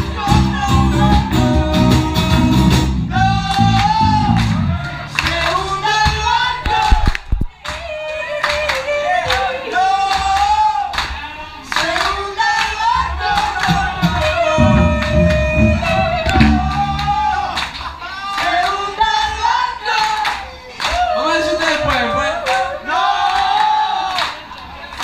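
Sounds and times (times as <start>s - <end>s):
strong bass line: 0.3s - 5.2s, 13.6s - 18.0s
person singing: 13.1s - 18.8s
instrumental accompaniment: 13.6s - 18.0s.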